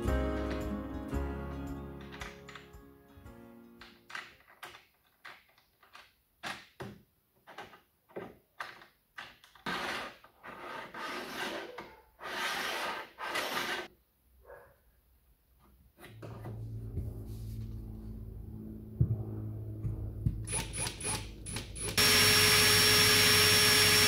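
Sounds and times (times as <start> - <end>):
wood scraping on wood: 9.6 - 13.9.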